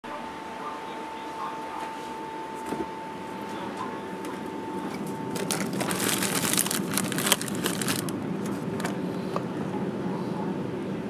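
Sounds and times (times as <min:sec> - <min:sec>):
plastic wrapper crinkling: 0:05.3 - 0:08.1.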